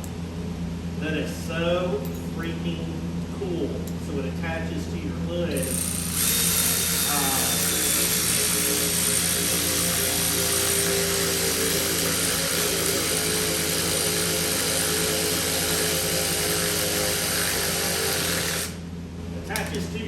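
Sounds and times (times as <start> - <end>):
power tool motor running: 5.5 - 18.9.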